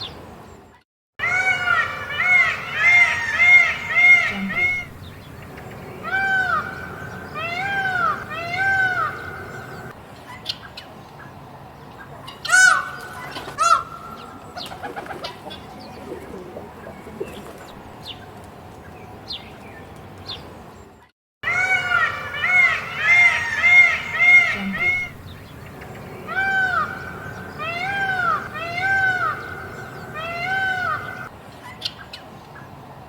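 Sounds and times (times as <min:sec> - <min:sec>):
peacock calling: 0:01.2 - 0:10.8, 0:12.2 - 0:18.2, 0:21.4 - 0:32.2
small birds chirping: 0:03.4 - 0:21.0, 0:22.6 - 0:33.0.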